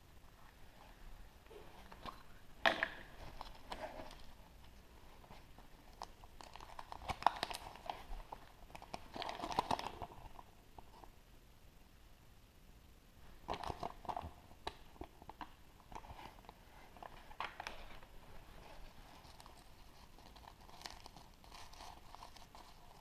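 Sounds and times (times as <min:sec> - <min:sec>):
foil wrapper crinkling: 0:05.9 - 0:10.2, 0:19.2 - 0:23.0.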